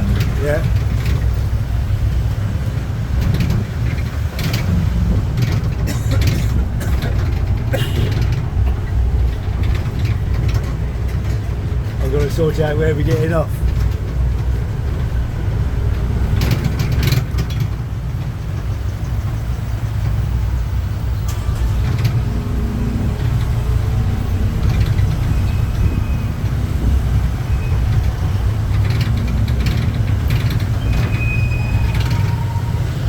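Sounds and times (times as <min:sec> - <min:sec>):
engine and road rumble: 0:00.0 - 0:33.0
sharp rattles: 0:00.0 - 0:33.0.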